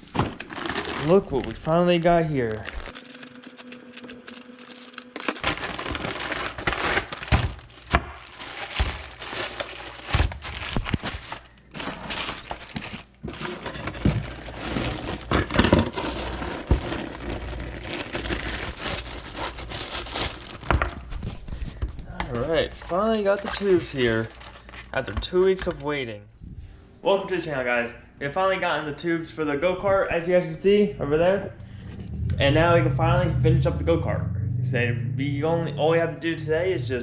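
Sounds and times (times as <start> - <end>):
packaging crinkling and tearing: 0.2 - 1.2, 2.6 - 21.4, 23.2 - 24.9.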